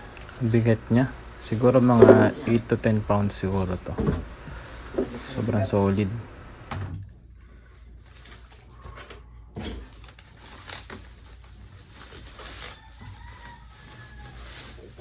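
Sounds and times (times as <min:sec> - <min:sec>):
steady low hum: 0:00.0 - 0:07.7.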